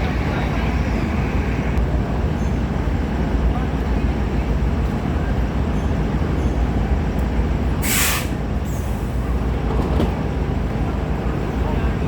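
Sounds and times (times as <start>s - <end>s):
train rumbling: 0.0s - 12.0s
air brake hiss: 7.8s - 9.2s.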